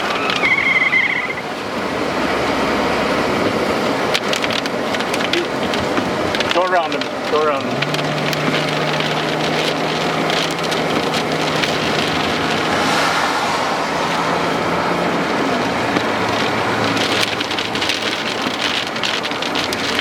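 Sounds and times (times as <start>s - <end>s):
engine drone: 0.0s - 20.0s
rain pelting a car: 0.0s - 20.0s
road noise: 0.0s - 20.0s.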